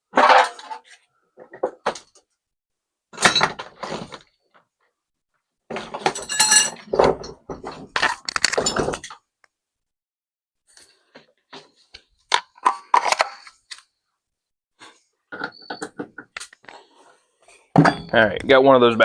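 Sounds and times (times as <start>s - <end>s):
tools clattering on workbench: 0.1s - 2.1s, 3.2s - 4.2s, 5.7s - 9.2s, 15.3s - 16.8s, 17.7s - 18.2s
metallic ring: 6.2s - 6.8s.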